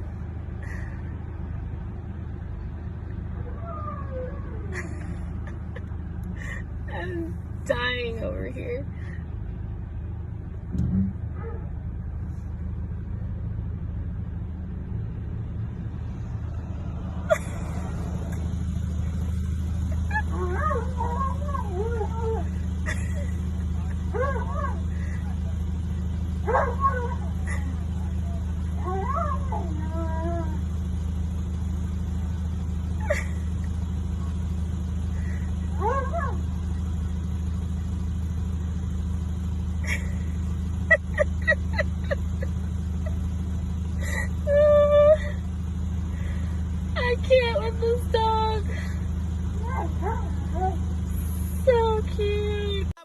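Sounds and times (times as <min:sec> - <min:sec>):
car engine rumble from inside: 0:00.0 - 0:53.0
steady low hum: 0:00.0 - 0:53.0
animal whining: 0:19.8 - 0:22.7, 0:26.4 - 0:30.7, 0:35.7 - 0:36.4, 0:49.6 - 0:51.3.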